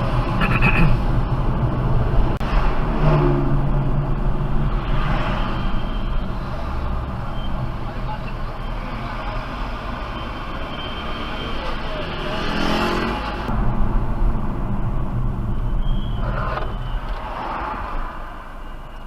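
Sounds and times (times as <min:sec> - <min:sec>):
car road and engine noise: 0:00.0 - 0:19.0
brakes squealing: 0:05.0 - 0:13.4, 0:15.4 - 0:19.0.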